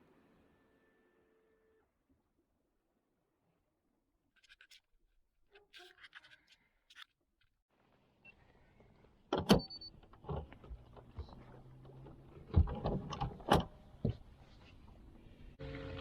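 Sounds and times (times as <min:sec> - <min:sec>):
faint motor hum: 0:15.4 - 0:16.0.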